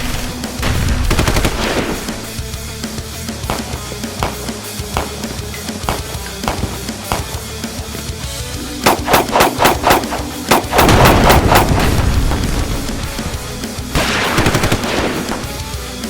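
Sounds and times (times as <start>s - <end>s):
sharp rapid bangs: 0.0s - 2.7s, 8.8s - 15.8s
loud rock music: 0.0s - 16.0s.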